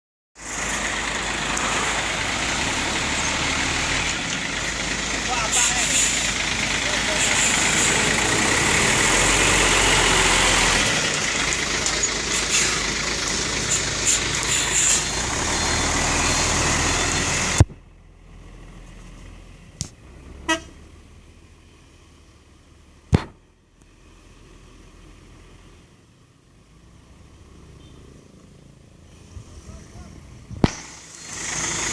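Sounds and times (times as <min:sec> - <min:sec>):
truck engine and road noise: 0:00.4 - 0:31.9
truck horn tones: 0:20.4 - 0:20.8
sharp knocks: 0:23.1 - 0:23.4.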